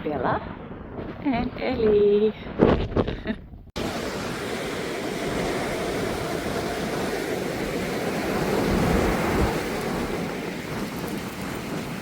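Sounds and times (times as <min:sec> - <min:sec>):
wind buffeting microphone: 0:00.0 - 0:12.0
surf washing: 0:03.8 - 0:12.0.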